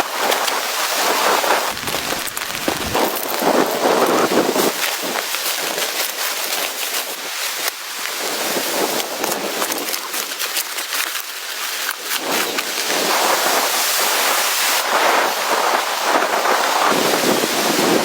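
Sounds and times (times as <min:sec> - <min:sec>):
gusting wind rushing: 0:01.7 - 0:03.5.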